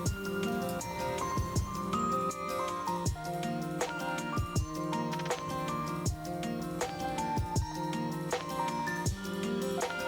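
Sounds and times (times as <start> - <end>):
kick drum beat: 0.0 - 0.3, 1.4 - 2.0, 3.1 - 4.9, 6.1 - 8.5, 9.1 - 9.4
sustained melodic notes: 0.0 - 10.0.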